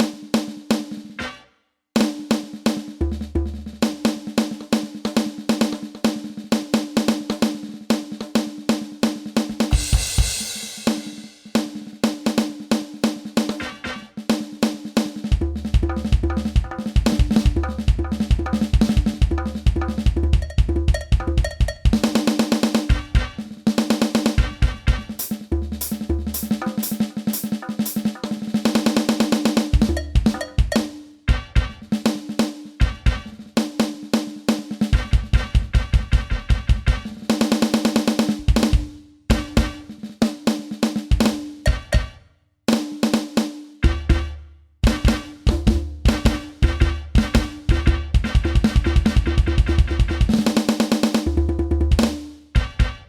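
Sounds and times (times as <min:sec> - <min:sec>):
cymbal crash with bass drum: 0:09.5 - 0:11.8, 0:17.0 - 0:32.2, 0:32.8 - 0:33.4, 0:34.9 - 0:39.9, 0:43.8 - 0:50.8
electronic drum strokes: 0:09.6 - 0:11.9, 0:15.2 - 0:33.5, 0:34.8 - 0:39.9, 0:41.1 - 0:42.2, 0:43.8 - 0:51.2.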